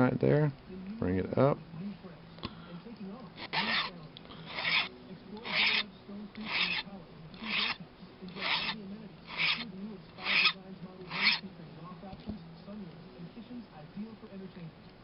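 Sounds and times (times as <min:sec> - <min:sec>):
hand file rasping on wire: 0:03.4 - 0:11.5.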